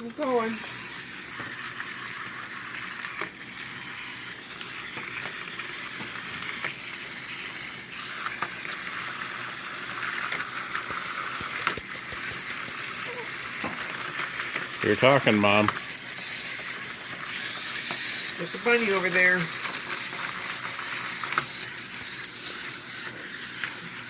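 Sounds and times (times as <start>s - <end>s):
clockwork toy motors whirring: 0.0s - 24.0s.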